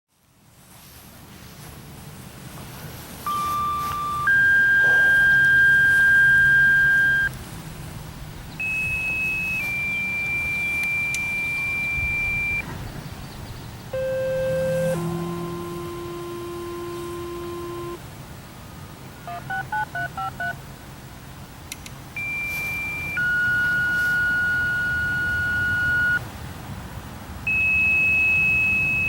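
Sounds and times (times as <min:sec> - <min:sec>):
two-tone radio paging tones: 0:03.2 - 0:07.4, 0:08.6 - 0:12.6, 0:13.9 - 0:18.0, 0:19.2 - 0:20.6, 0:22.2 - 0:26.2, 0:27.5 - 0:29.0.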